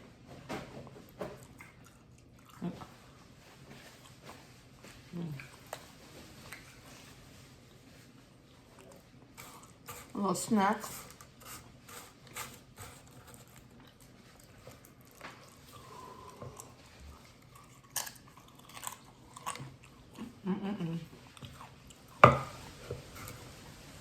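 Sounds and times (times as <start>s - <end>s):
chewing and biting food: 1.2s - 4.5s, 11.2s - 20.4s.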